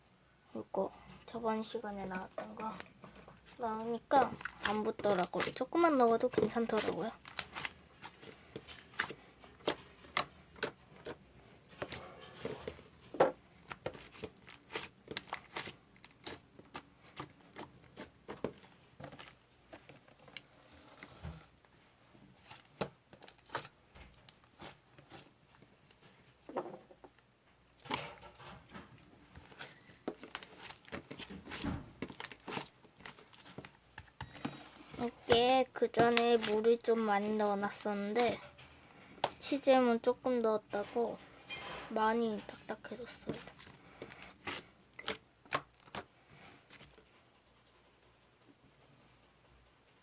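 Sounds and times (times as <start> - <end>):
slime squeezed with sticky pops: 43.0 - 46.1.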